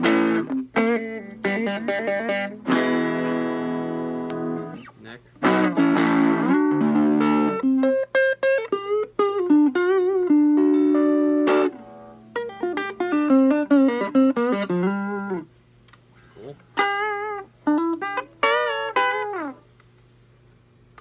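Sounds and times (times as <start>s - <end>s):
electric guitar through amp: 0.0s - 15.5s.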